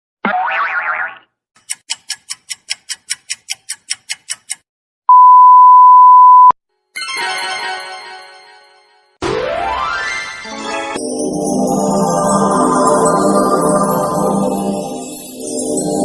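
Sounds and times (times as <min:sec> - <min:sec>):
sharp ticks: 0:01.6 - 0:04.6
censor beep: 0:05.1 - 0:06.6.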